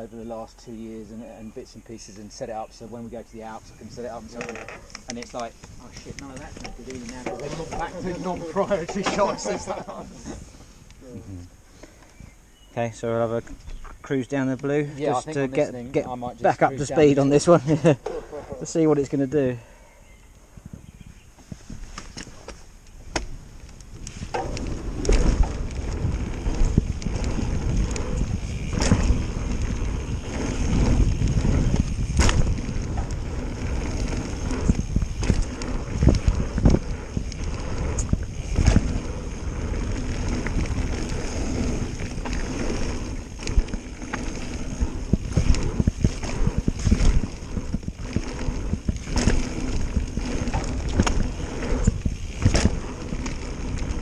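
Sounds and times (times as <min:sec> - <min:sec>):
bike tyre noise on dirt: 0:00.0 - 0:54.0
bike knocks and rattles: 0:04.0 - 0:09.8, 0:21.8 - 0:54.0
wind rumble on microphone: 0:20.3 - 0:54.0.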